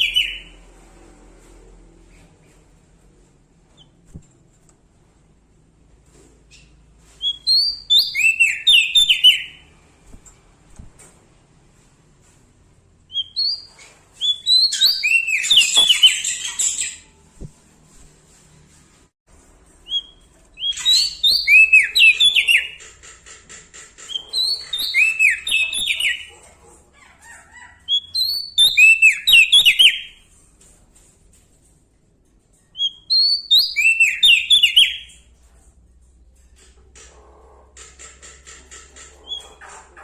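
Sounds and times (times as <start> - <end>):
songbird whistling: 7.2 - 9.6, 13.1 - 17.1, 19.9 - 22.8, 24.1 - 26.3, 32.8 - 35.1.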